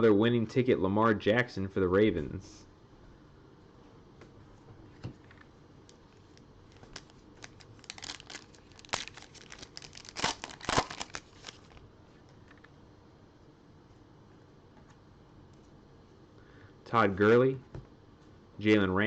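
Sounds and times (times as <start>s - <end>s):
card pack wrapper crinkling and tearing: 6.3s - 11.8s.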